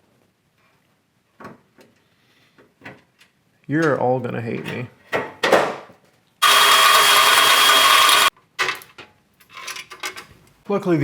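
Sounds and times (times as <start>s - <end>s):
electric drill running: 6.4s - 8.3s.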